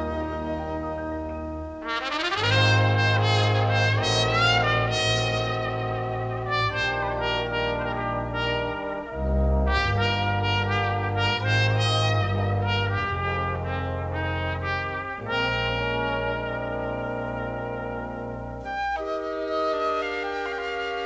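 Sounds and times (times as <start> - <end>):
background music with held chords: 0.0 - 21.0.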